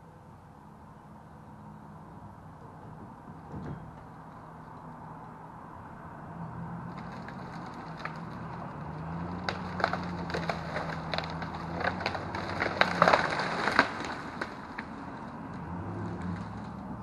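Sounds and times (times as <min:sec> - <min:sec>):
wood cracking and snapping: 0:06.9 - 0:16.9.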